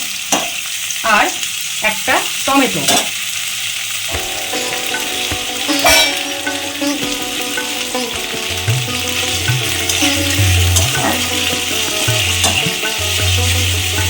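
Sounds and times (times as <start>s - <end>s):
food sizzling in hot oil: 0.0s - 14.0s
background music with bass: 4.1s - 14.0s.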